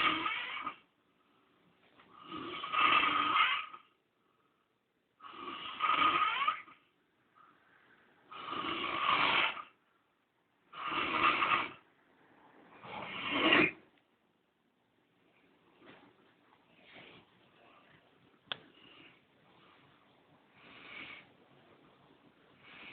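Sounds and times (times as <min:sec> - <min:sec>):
man snoring: 0:00.0 - 0:00.8, 0:02.2 - 0:03.9, 0:05.2 - 0:06.8, 0:08.3 - 0:09.8, 0:10.7 - 0:11.9
quiet breaths: 0:00.0 - 0:14.2, 0:14.8 - 0:22.9.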